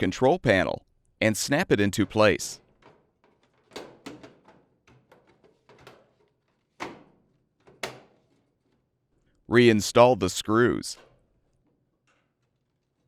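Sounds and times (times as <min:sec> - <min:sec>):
plastic panel clicks and knocks: 0:02.7 - 0:08.3.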